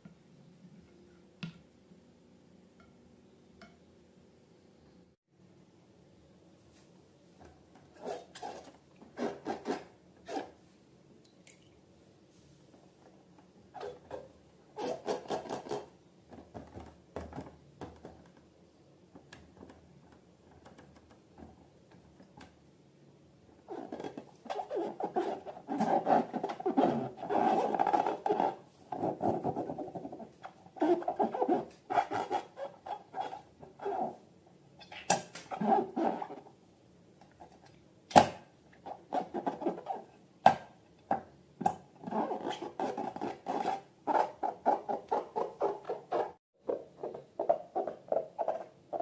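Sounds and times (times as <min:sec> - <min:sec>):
rubber balloons rubbing: 0:23.7 - 0:34.2, 0:42.0 - 0:48.7
scratchy handling sounds: 0:42.0 - 0:49.0.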